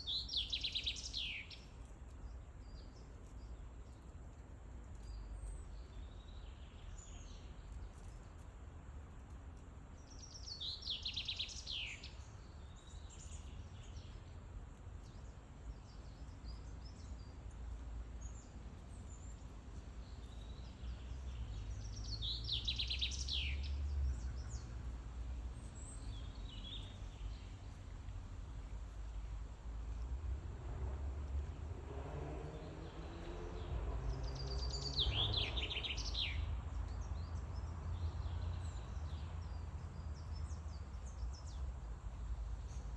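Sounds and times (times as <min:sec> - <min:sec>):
songbirds singing: 0:00.0 - 0:42.9
soft bird chirps: 0:10.0 - 0:27.9
steady low rumble: 0:24.0 - 0:41.0.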